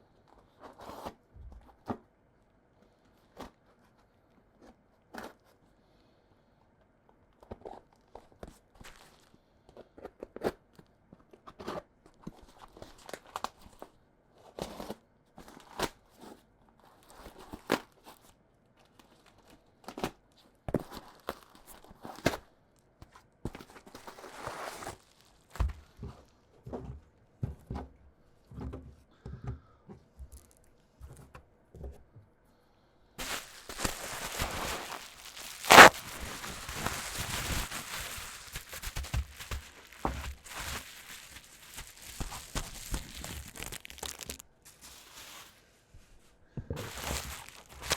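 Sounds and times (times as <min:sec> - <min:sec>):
plastic wrapping crinkling and tearing: 0:24.0 - 0:25.6, 0:33.2 - 0:45.6, 0:46.8 - 0:47.9.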